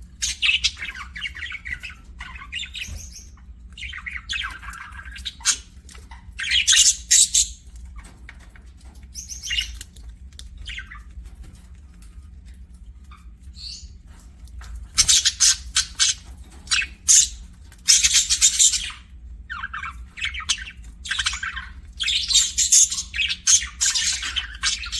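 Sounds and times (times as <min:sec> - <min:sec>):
budgerigars chirping: 0:00.2 - 0:08.1, 0:09.2 - 0:09.9, 0:10.6 - 0:11.1, 0:13.5 - 0:14.0, 0:14.9 - 0:24.9.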